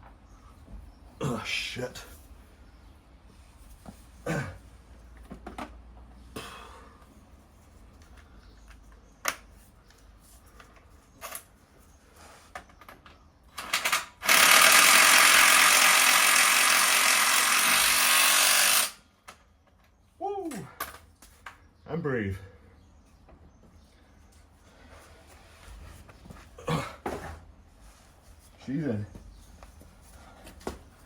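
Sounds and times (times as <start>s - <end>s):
power tool rattling: 13.6s - 19.0s.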